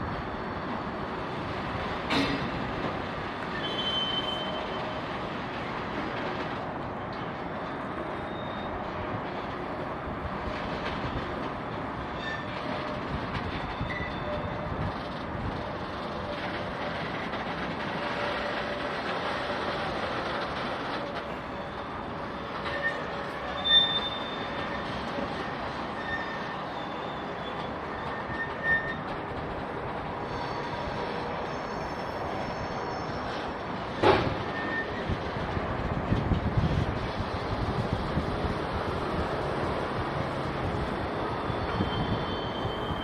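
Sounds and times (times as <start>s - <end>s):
freight cars rolling rumble: 0.0s - 43.0s
wheel squeals: 3.5s - 5.8s, 7.5s - 9.8s, 11.9s - 29.3s, 30.2s - 35.3s, 40.3s - 43.0s.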